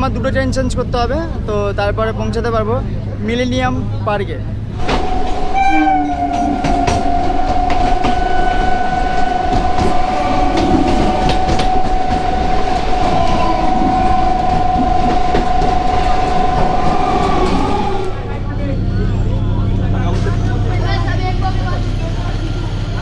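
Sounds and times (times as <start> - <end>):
train rumble: 0.0 - 23.0
electric train high whine: 4.6 - 23.0.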